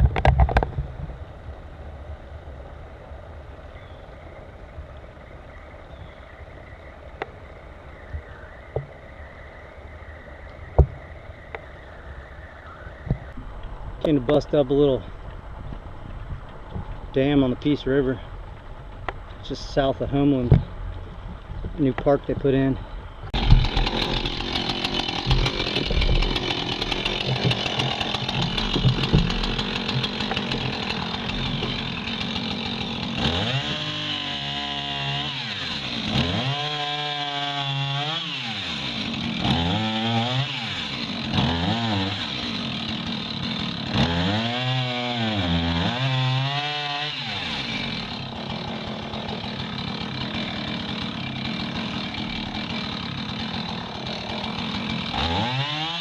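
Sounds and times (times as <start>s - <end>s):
chainsaw cutting logs: 22.0s - 56.0s.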